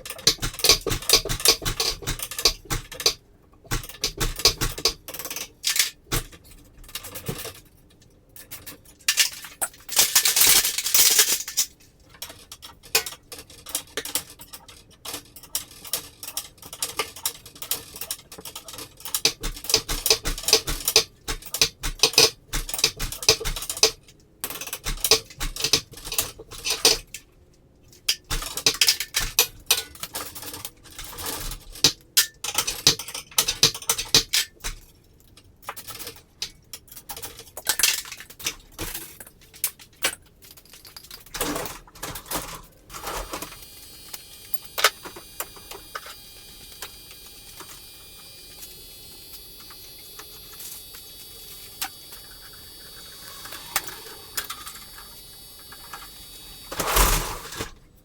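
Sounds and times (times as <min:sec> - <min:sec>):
metallic clinking and clattering: 0:08.4 - 0:11.8.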